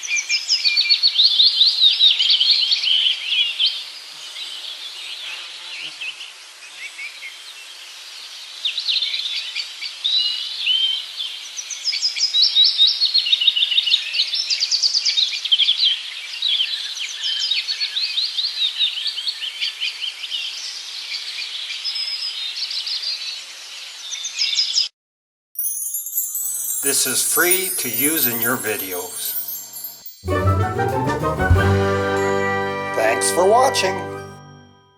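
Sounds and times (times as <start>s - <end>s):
birds chirping and singing: 26.2s - 30.0s.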